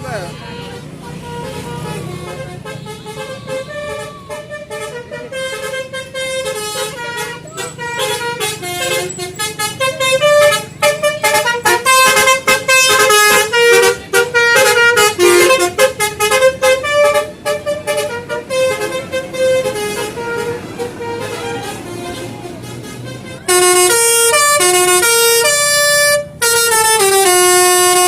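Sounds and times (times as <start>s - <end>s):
musical air horn tune: 1.2s - 28.0s.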